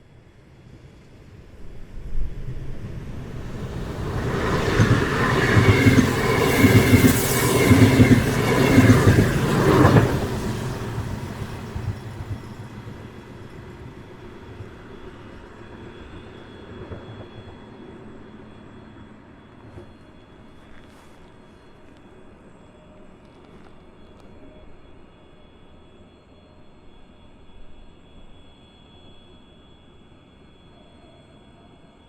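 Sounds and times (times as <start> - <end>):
faint thin high tone: 13.9 - 32.0.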